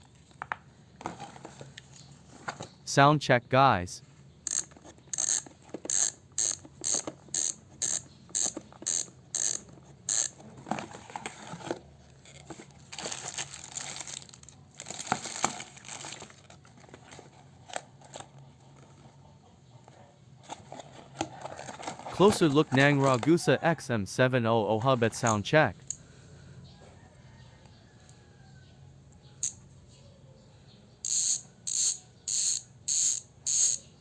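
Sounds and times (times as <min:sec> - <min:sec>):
bicycle freehub ratcheting clicks: 0:04.4 - 0:10.4, 0:31.0 - 0:33.8.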